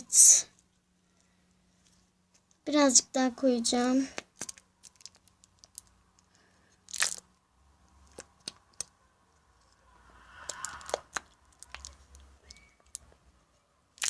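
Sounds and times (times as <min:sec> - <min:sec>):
plastic bottle clicks and crackles: 0:04.2 - 0:05.9.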